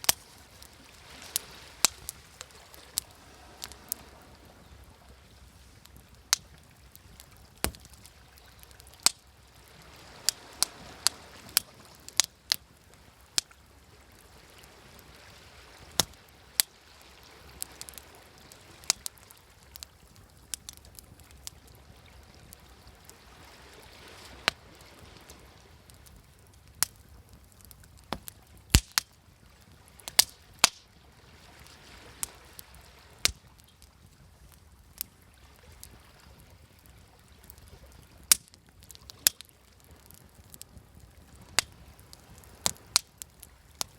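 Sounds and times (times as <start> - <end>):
wood fire crackling and popping: 0.0 - 15.1, 15.8 - 23.2, 24.0 - 30.9, 31.6 - 43.9
waves washing: 0.0 - 26.4, 28.0 - 34.6.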